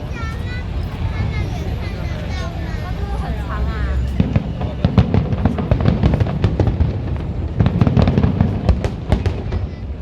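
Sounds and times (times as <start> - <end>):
fireworks bangs and crackles: 3.1 - 10.0.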